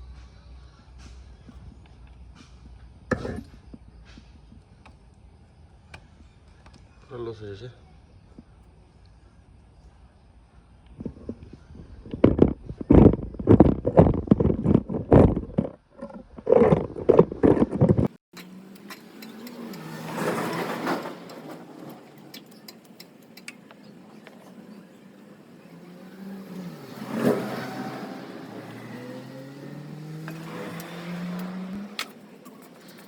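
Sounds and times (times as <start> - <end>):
motorcycle engine idling and revving: 10.7 - 33.0.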